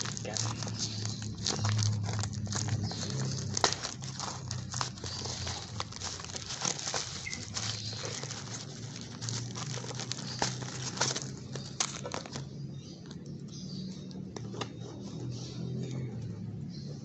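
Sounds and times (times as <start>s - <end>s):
cardboard box tearing open: 0.0s - 12.4s.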